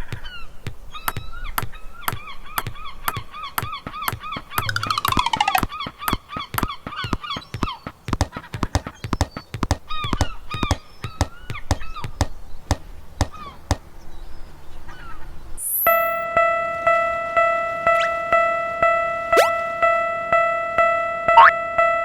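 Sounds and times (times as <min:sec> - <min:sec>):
rising boing: 0:02.6 - 0:06.7
railroad crossing bell ringing: 0:15.9 - 0:22.0
cartoon honking calls: 0:17.0 - 0:20.1.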